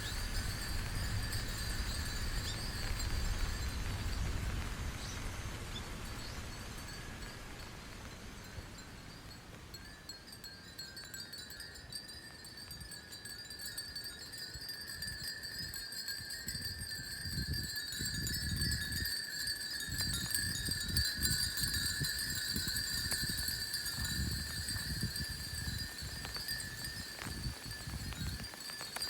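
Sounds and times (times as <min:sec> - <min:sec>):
wind chimes tinkling: 0:00.0 - 0:04.6, 0:06.0 - 0:29.0
wind buffeting microphone: 0:00.0 - 0:10.4, 0:14.8 - 0:29.0.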